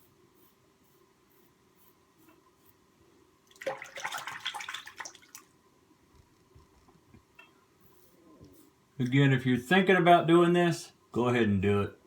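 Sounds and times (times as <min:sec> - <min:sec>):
water splashing in a sink: 0:03.5 - 0:05.6.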